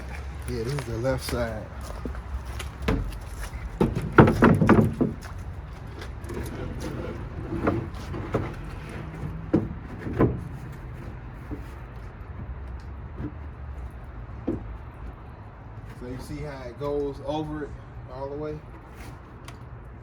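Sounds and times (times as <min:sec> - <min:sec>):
wooden knocks: 0:00.0 - 0:05.4.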